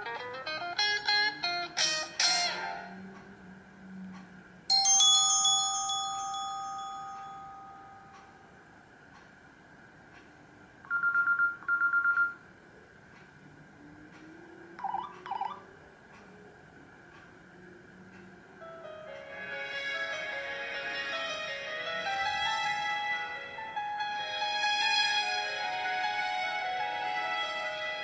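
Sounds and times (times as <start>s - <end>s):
bell-like phone chime: 4.7s - 8.4s.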